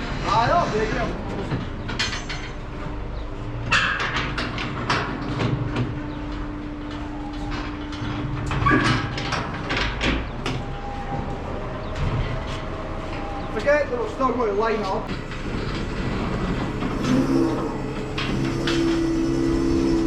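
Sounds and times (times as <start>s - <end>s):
metallic knocks and clanks: 1.5s - 5.9s
steady low hum: 12.6s - 20.0s.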